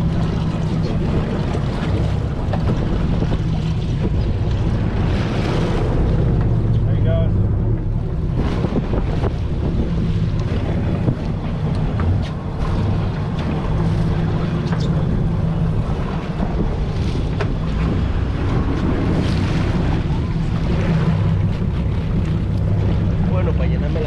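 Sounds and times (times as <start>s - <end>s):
boat engine running: 0.0s - 24.0s
water washing past hull: 0.0s - 24.0s
wind buffeting microphone: 0.0s - 24.0s.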